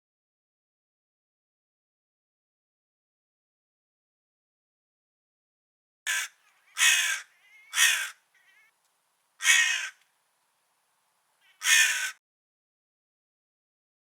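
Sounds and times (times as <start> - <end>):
crow cawing: 6.1 - 8.8, 9.4 - 10.0, 11.4 - 12.2.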